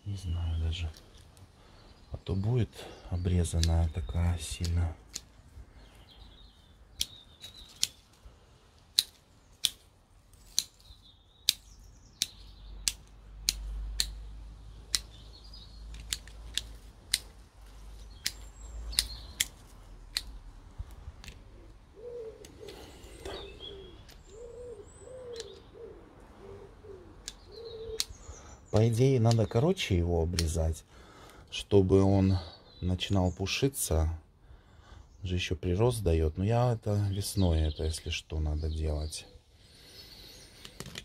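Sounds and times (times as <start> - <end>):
birds chirping faintly: 0.0 - 41.0
pruning shears snipping stems: 3.2 - 5.5, 6.9 - 21.4, 27.2 - 30.7
bird cooing: 21.5 - 28.2.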